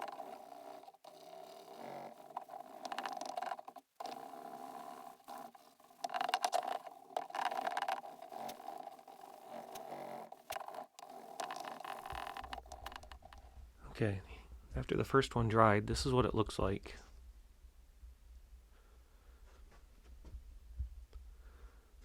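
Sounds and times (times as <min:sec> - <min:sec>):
wipe scrubbing plastic lens: 0:00.0 - 0:13.5.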